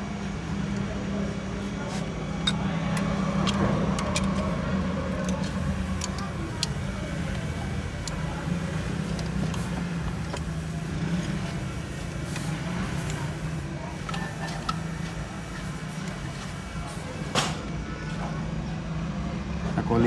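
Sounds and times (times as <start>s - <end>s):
low mechanical hum: 0.0s - 19.9s.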